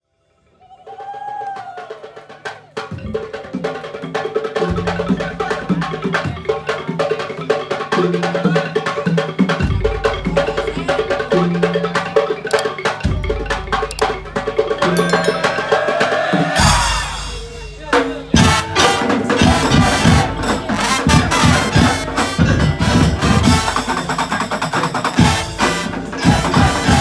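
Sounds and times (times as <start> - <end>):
sustained melodic line: 14.8 - 15.8.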